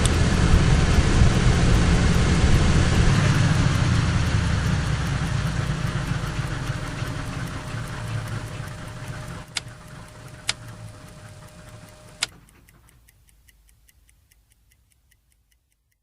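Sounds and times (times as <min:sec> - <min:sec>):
aircraft engine drone: 0:00.0 - 0:12.3
steady hum: 0:00.0 - 0:12.3
faint rapid ticking: 0:00.0 - 0:16.0
sharp clicks: 0:04.2 - 0:16.0.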